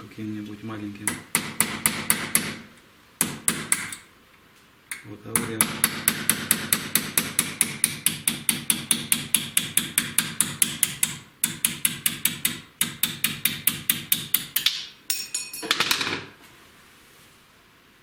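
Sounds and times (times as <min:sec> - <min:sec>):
hammer tapping on chisel: 0:01.1 - 0:02.6, 0:03.2 - 0:04.0, 0:04.9 - 0:16.0.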